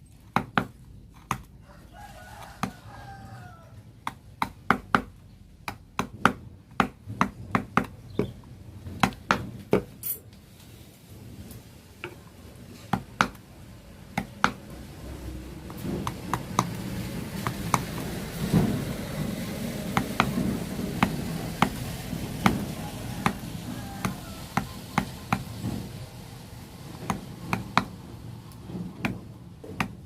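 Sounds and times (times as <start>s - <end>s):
chisel tapping into wood: 0.3s - 1.5s, 4.0s - 8.3s, 9.0s - 9.9s, 12.9s - 13.4s, 14.2s - 14.6s, 16.0s - 16.8s, 24.0s - 25.8s, 26.9s - 27.9s, 28.7s - 30.0s
low steady rumble: 5.1s - 30.0s.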